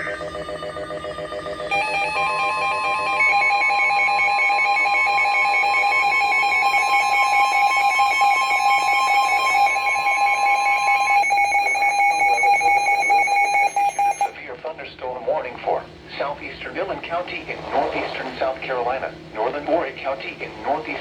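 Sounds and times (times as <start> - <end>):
rapid electronic alert beeping: 0.0 - 14.4
steady alarm tone: 0.0 - 14.4.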